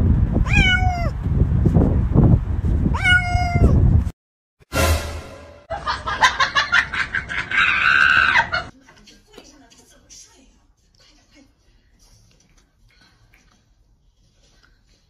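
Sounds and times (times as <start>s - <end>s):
cat meowing: 0.4s - 1.2s, 2.9s - 3.8s
sudden crash: 4.7s - 6.2s.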